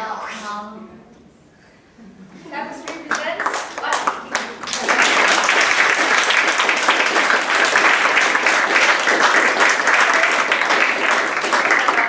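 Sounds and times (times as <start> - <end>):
audience applauding: 2.8 - 12.0.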